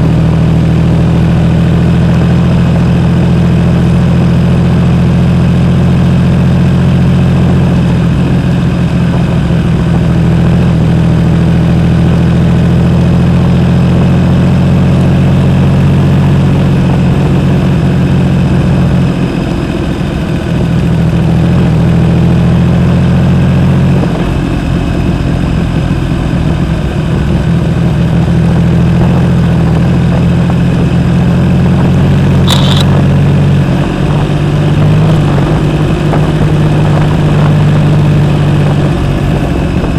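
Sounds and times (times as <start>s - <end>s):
motorcycle engine running: 0.0s - 22.0s, 32.0s - 39.4s.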